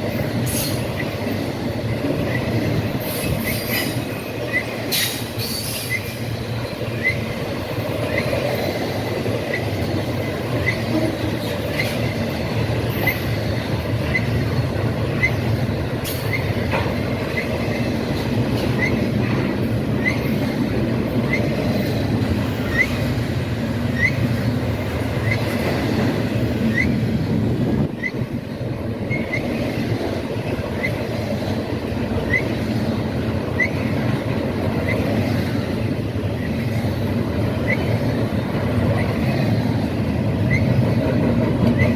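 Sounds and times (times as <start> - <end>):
freight train wheels rumbling: 0.0 - 41.9
short high squeak: 3.2 - 6.3.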